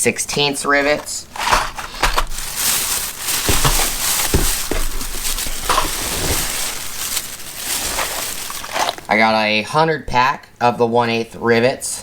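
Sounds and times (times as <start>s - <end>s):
plastic packaging crinkling: 0.4s - 9.3s.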